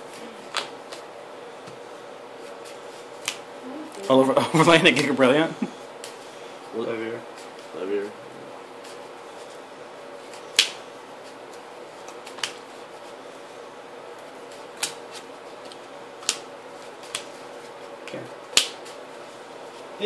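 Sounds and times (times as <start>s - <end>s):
faint room hum: 0.0s - 20.0s
cards snapped on a table: 0.5s - 1.0s, 3.2s - 3.4s, 10.3s - 10.8s, 12.0s - 12.6s, 14.5s - 17.4s, 18.0s - 19.0s.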